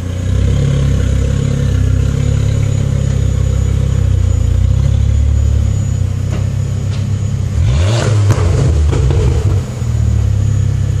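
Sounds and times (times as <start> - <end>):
car engine idling and revving: 0.0 - 11.0
exhaust crack: 6.2 - 10.1.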